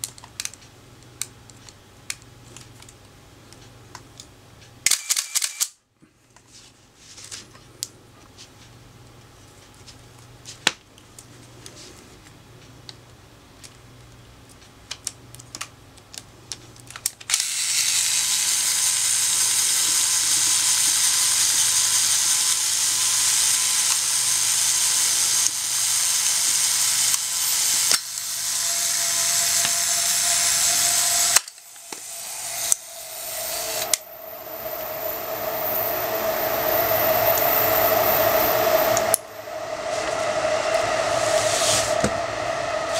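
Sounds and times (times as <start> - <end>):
camera motor drive whirring: 4.9 - 5.7, 17.3 - 35.8
camera shutter clicks: 4.9 - 5.8.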